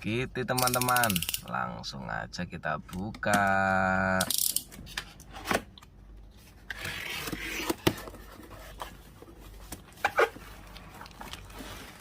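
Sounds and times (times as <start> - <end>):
box rubbing and scraping: 6.7 - 10.7.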